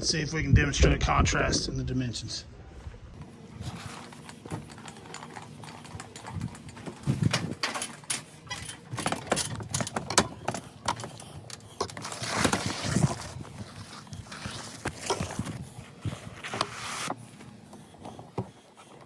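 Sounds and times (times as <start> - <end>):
scraping rustle: 2.8 - 9.8, 11.8 - 17.2
knocks and scuffs of climbing: 3.2 - 19.0.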